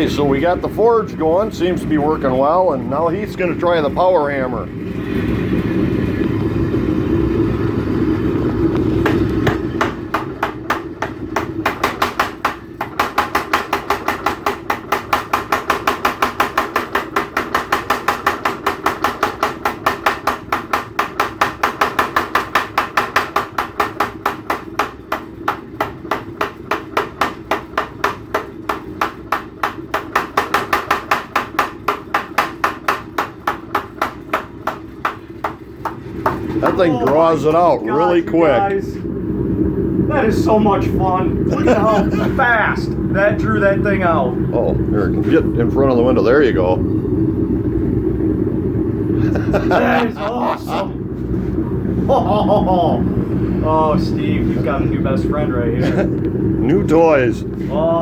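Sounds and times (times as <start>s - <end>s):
power hammer pounding steel: 0.0s - 38.6s
steady hum: 0.0s - 58.0s.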